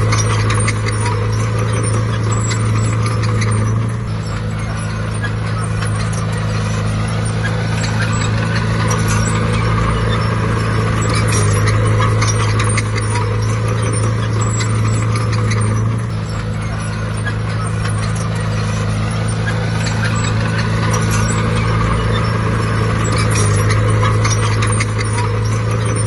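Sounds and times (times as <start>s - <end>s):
heavy diesel machine running: 0.0s - 26.0s
light metallic clatter: 0.0s - 26.0s.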